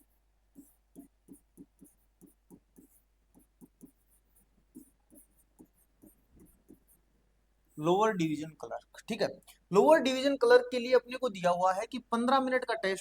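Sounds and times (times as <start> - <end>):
faint writing taps: 0.0 - 7.8.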